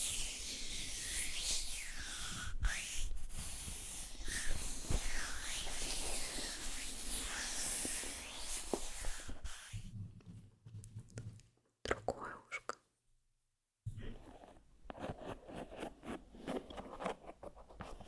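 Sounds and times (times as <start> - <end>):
scratchy strokes on microphone: 0.0 - 10.8.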